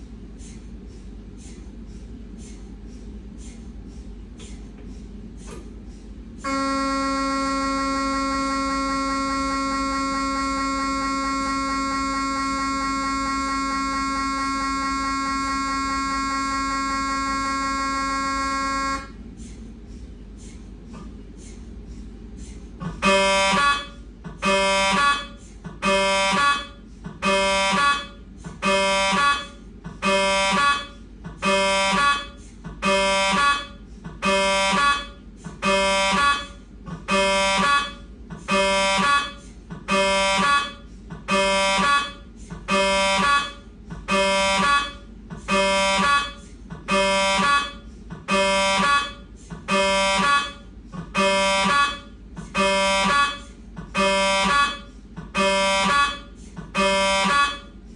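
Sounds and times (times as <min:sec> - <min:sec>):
low hum: 0:00.0 - 0:57.9
mri scanner buzzing: 0:06.5 - 0:19.2.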